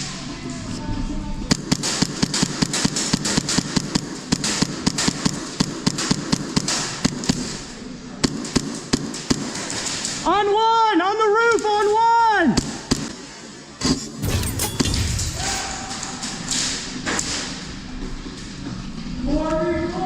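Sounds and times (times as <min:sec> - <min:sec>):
airsoft guns firing: 0:01.5 - 0:10.2.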